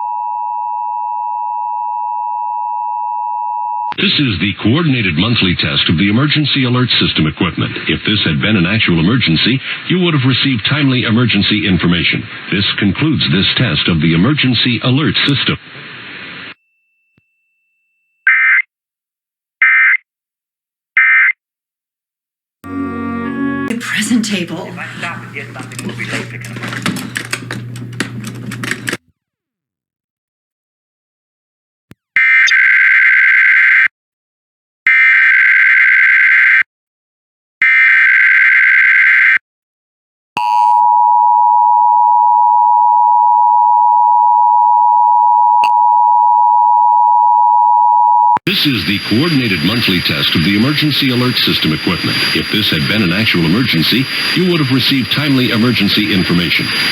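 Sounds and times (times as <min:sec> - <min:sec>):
steady attention tone: 0:22.6 - 0:28.9, 0:48.5 - 0:56.9.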